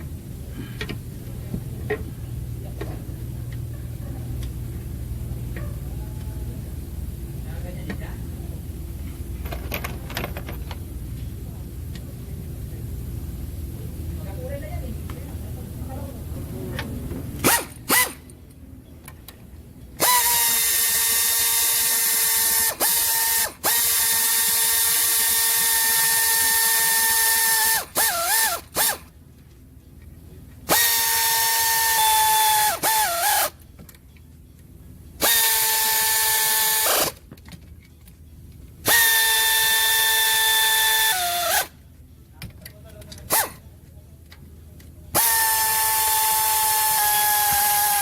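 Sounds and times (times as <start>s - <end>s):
power tool motor running: 17.4s - 18.2s, 20.0s - 29.1s, 30.7s - 33.6s, 35.2s - 37.2s, 38.8s - 41.7s, 45.2s - 48.0s.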